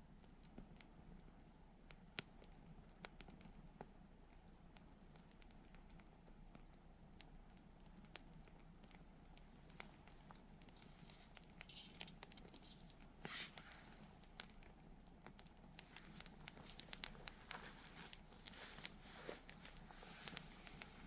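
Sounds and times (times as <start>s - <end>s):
campfire crackling: 6.6s - 21.0s.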